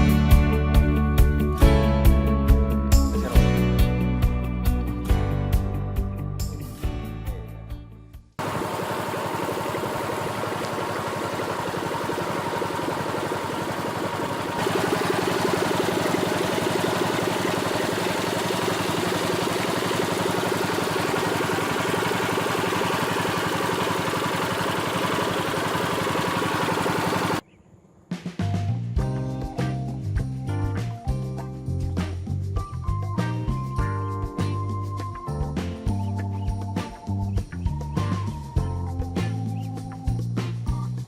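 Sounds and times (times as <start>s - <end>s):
small engine running: 8.4s - 27.4s.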